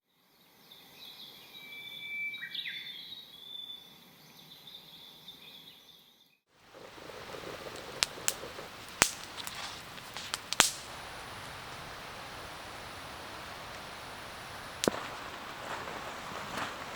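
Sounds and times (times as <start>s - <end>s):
campfire hissing: 6.6s - 16.9s
fire crackling pops: 6.6s - 16.9s
birds calling: 6.8s - 16.9s.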